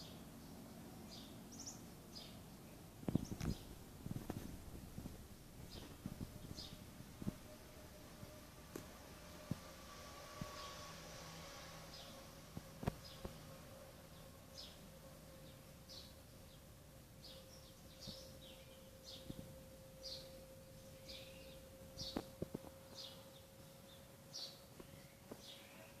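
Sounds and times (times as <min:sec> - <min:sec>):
bird chirping: 0:00.0 - 0:06.9, 0:12.8 - 0:26.0
faint hum: 0:00.0 - 0:26.0.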